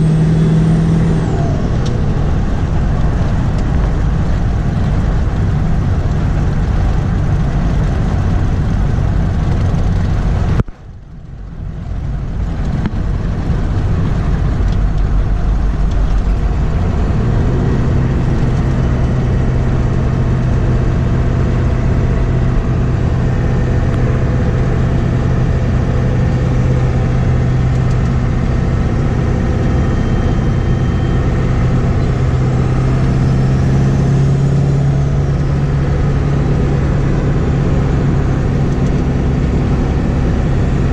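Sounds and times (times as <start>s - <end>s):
diesel engine running: 0.0s - 40.9s.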